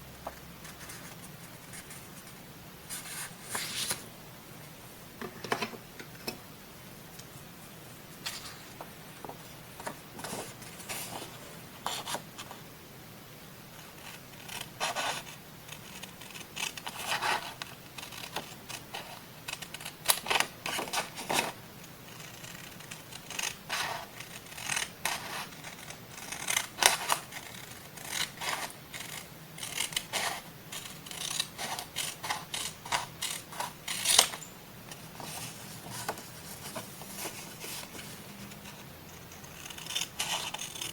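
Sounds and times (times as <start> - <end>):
paper rustling: 2.9 - 4.1, 35.0 - 38.5
scissors cutting paper: 14.0 - 38.8, 39.4 - 40.9.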